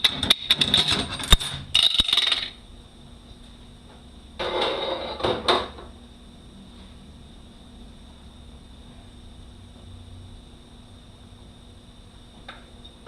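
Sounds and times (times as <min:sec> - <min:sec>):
metal parts clanking: 0:00.0 - 0:02.5
metal scraping rattle: 0:00.0 - 0:02.5.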